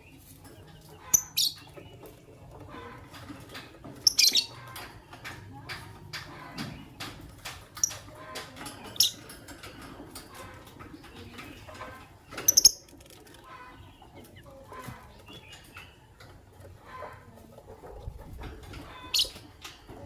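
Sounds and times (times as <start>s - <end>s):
soft bird chattering: 0.0s - 5.1s, 7.8s - 16.1s
birds chirping shrilly: 0.8s - 2.1s, 4.0s - 4.8s.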